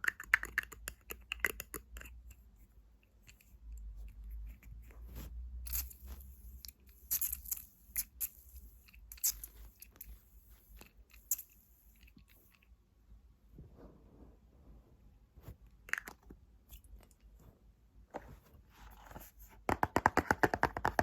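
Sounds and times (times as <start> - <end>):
fingernails tapping on objects: 19.7 - 21.0.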